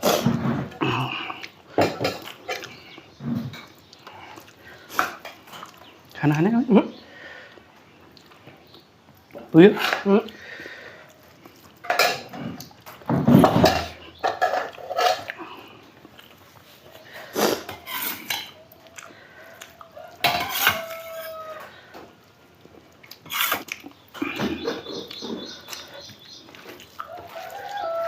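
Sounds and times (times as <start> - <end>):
chewing: 0.2 - 6.5, 7.2 - 13.1, 14.3 - 28.0
plates and utensils clinking: 1.7 - 2.8, 11.8 - 15.5, 20.2 - 21.7.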